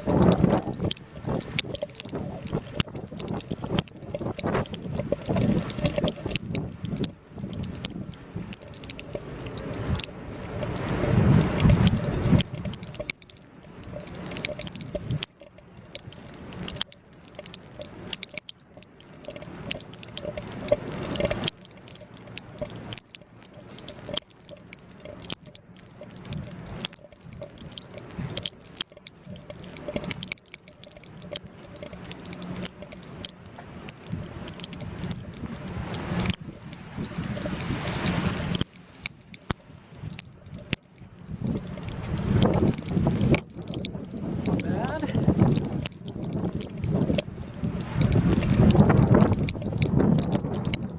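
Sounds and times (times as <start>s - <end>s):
wind gusting over microphone: 0.0s - 1.5s, 9.7s - 12.6s, 41.3s - 50.9s
sharp ticks and patters: 0.0s - 50.9s.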